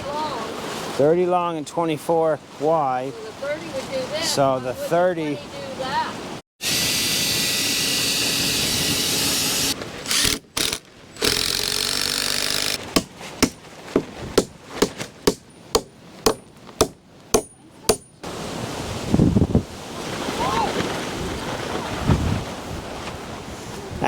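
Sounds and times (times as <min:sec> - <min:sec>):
wind rushing over microphone: 0:18.2 - 0:24.0.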